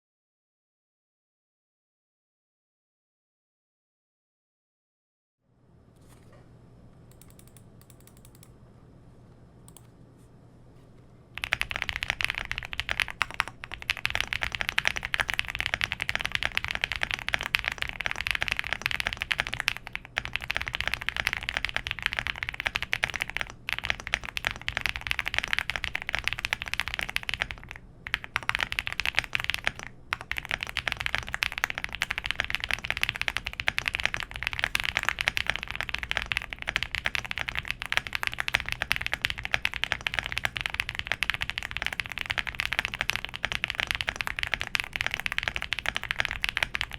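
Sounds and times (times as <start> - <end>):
fast mechanical keyboard typing: 7.1 - 8.5, 11.4 - 46.9.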